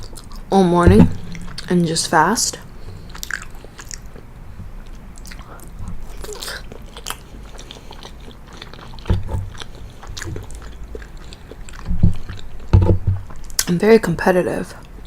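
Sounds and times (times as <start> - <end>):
chewing pasta: 0.0 - 0.6, 2.9 - 13.7, 14.6 - 15.0
low thump: 0.8 - 3.2
wet mouth clicks: 2.9 - 4.3, 4.9 - 12.6.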